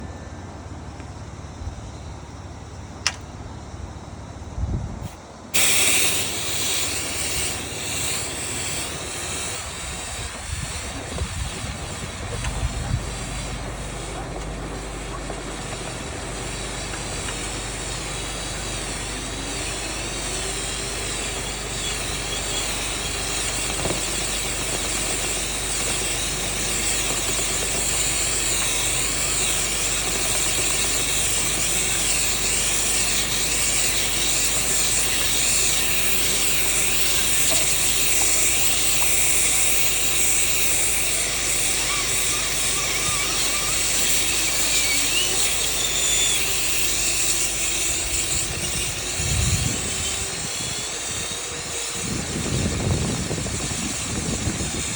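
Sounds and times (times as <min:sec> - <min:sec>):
loud rush of air: 0:04.5 - 0:21.8.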